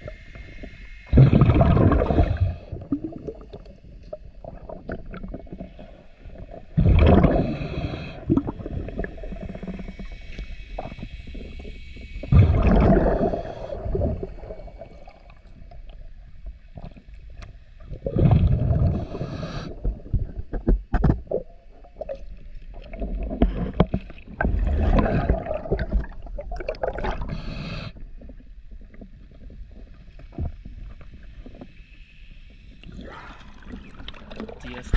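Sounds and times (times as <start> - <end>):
water gurgling: 0.0 - 31.6, 32.8 - 34.9
exhaled bubbles bursting: 1.1 - 3.7, 4.4 - 10.1, 12.3 - 15.9, 17.9 - 20.6, 21.2 - 27.6, 32.9 - 34.9.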